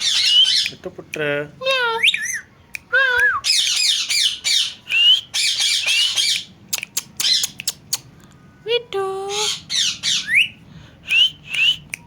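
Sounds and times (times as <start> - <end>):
parrot squawking: 0.0 - 0.8, 1.6 - 8.1, 9.3 - 10.6
parrot clicking: 5.9 - 8.1.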